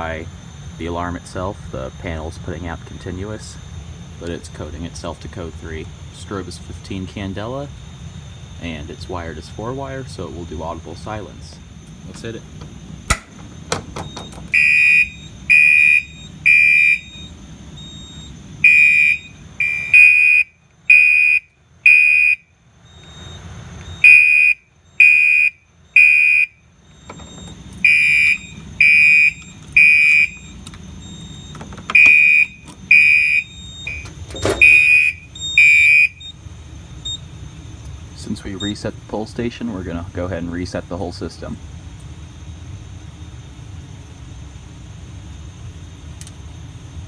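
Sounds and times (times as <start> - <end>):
fire alarm horn blasts: 13.1 - 37.3.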